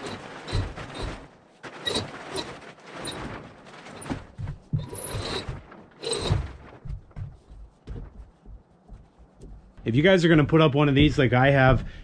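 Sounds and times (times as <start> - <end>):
rope squeaking: 0.0 - 6.7
tarp rustling: 0.0 - 6.9.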